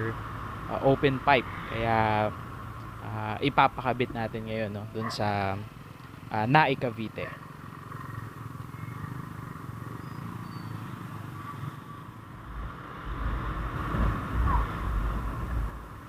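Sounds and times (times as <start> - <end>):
motorcycle engine hum: 0.0 - 16.0
wind rumbling on microphone: 12.4 - 16.0.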